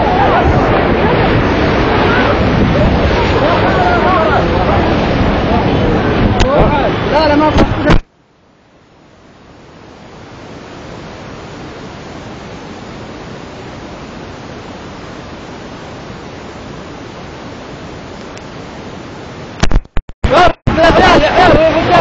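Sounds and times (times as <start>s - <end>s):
rushing water: 0.0s - 22.0s.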